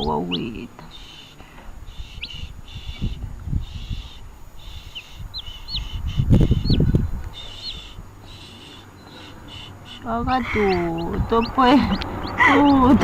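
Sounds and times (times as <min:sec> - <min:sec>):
baby chick peeping: 0:00.0 - 0:13.0.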